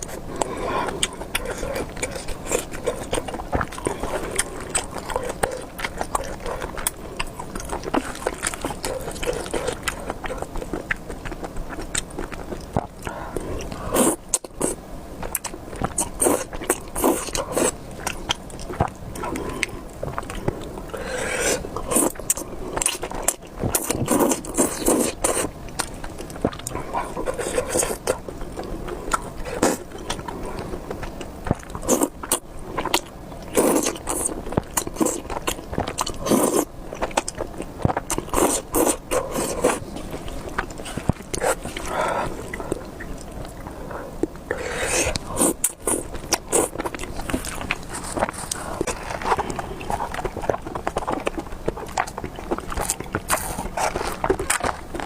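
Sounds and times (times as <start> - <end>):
chewing: 0.0 - 55.0
slurping noodles: 13.4 - 14.8, 15.8 - 17.8, 20.9 - 25.5, 26.4 - 28.3, 31.8 - 36.7, 37.8 - 42.8, 44.5 - 52.0.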